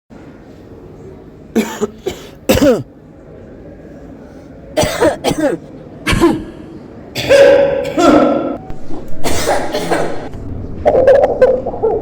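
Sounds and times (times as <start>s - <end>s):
people coughing: 1.5s - 3.0s, 4.8s - 8.6s, 9.2s - 10.3s.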